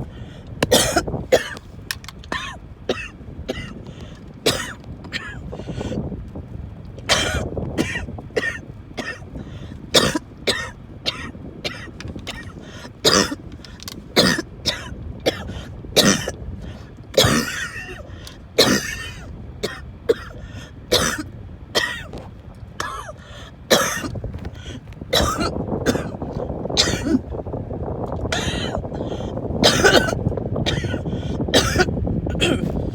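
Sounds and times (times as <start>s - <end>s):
person coughing: 0.6s - 1.6s, 2.3s - 3.8s, 4.4s - 5.5s, 7.1s - 9.3s, 10.0s - 13.4s, 14.2s - 16.4s, 17.2s - 18.0s, 18.6s - 22.1s, 22.8s - 26.2s, 26.8s - 27.2s, 28.3s - 28.9s, 29.6s - 32.8s
wheezing gasping breaths: 20.4s - 20.8s, 23.1s - 23.6s, 24.5s - 24.9s.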